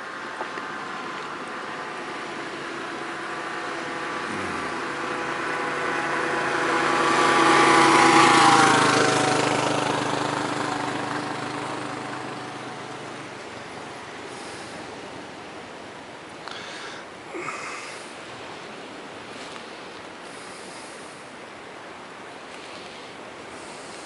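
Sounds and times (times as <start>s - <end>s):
vehicle driving past: 0.0s - 15.8s.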